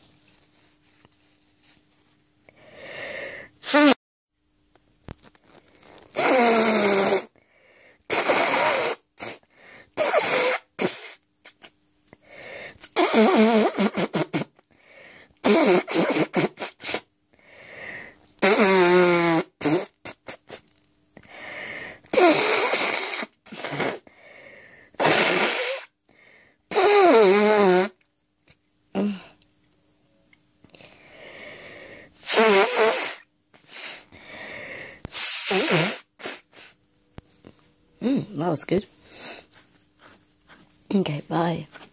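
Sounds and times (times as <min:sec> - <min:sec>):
person blowing nose: 0:02.8 - 0:04.0, 0:05.8 - 0:07.4, 0:08.0 - 0:11.7, 0:12.4 - 0:14.7, 0:15.4 - 0:20.7, 0:21.3 - 0:26.0, 0:26.7 - 0:28.0, 0:31.2 - 0:36.8, 0:39.1 - 0:40.6.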